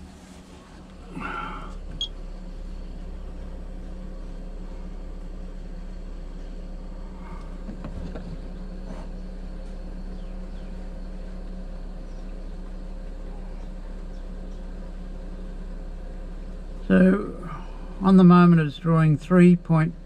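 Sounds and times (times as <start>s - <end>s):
fridge compressor humming: 0.0s - 20.0s.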